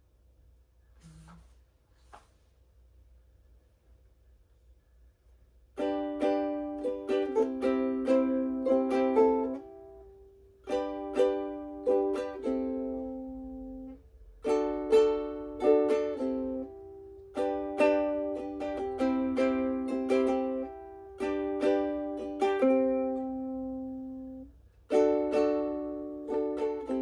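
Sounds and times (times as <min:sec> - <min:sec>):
ukulele strumming chords: 0:05.8 - 0:27.0.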